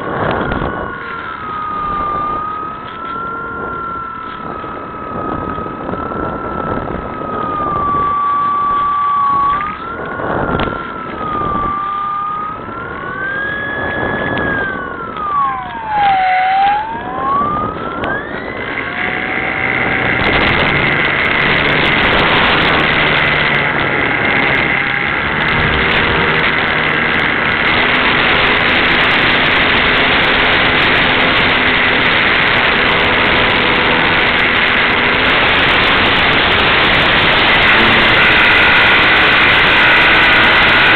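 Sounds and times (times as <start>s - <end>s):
model plane motor whining: 0.0s - 40.9s
wind noise on microphone: 0.0s - 40.9s.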